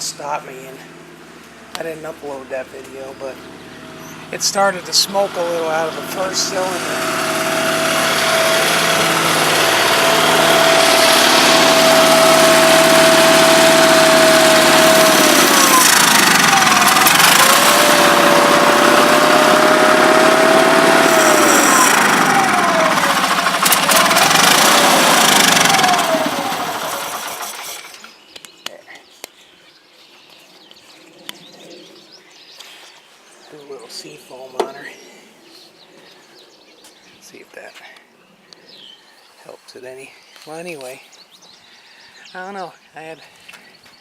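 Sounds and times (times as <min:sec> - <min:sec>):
small tractor engine running: 0:00.8 - 0:28.2.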